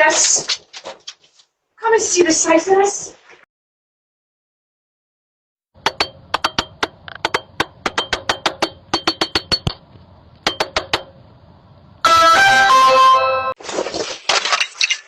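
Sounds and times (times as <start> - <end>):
sharp taps on hard surface: 5.8 - 9.8.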